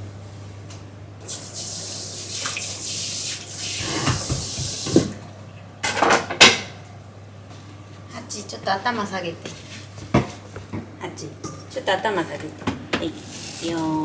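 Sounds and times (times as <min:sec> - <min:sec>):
tap water running into sink: 0:01.3 - 0:05.2.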